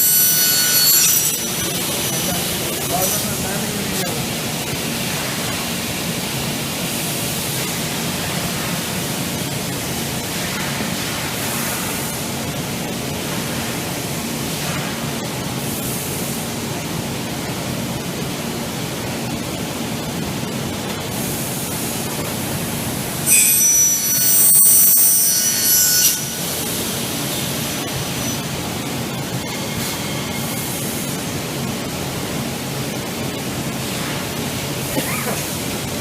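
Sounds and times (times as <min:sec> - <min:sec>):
saw blade screeching through metal: 0:00.0 - 0:03.3, 0:23.2 - 0:28.5
cutting saw machine humming: 0:00.0 - 0:04.8, 0:22.6 - 0:33.3.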